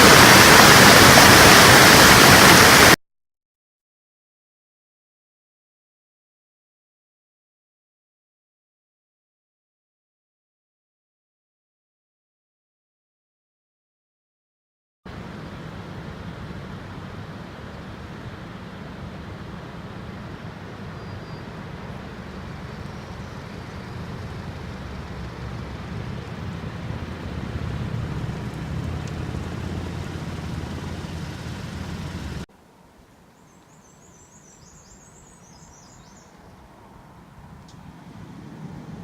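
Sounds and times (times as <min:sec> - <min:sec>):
waterfall rushing: 0:00.0 - 0:03.0, 0:23.7 - 0:32.5
bird chirping: 0:20.8 - 0:26.4, 0:33.3 - 0:36.6.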